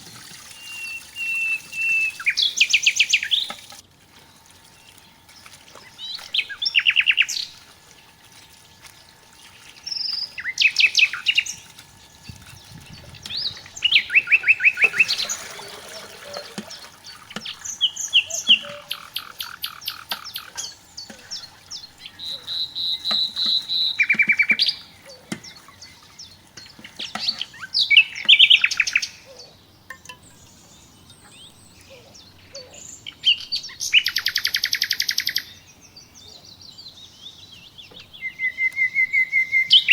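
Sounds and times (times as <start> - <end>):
songbird trilling: 0.6 - 3.6, 4.8 - 7.6, 9.0 - 39.9.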